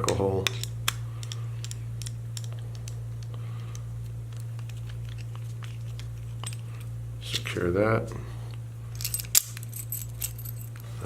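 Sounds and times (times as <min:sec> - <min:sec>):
small metal parts clicking: 0:00.0 - 0:06.9, 0:08.9 - 0:10.9
steady low hum: 0:00.0 - 0:11.0.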